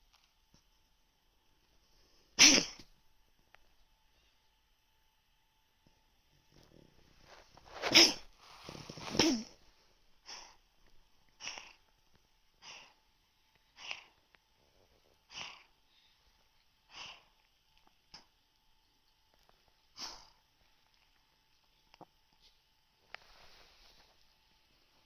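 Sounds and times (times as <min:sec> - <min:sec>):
cat sneezing: 0:02.4 - 0:02.9, 0:07.7 - 0:09.6, 0:11.4 - 0:11.8
wheezy breathing: 0:07.3 - 0:10.6, 0:12.6 - 0:13.0, 0:13.6 - 0:14.2, 0:15.1 - 0:17.5
cat sniffing: 0:11.4 - 0:11.8, 0:12.6 - 0:13.0, 0:13.8 - 0:14.2.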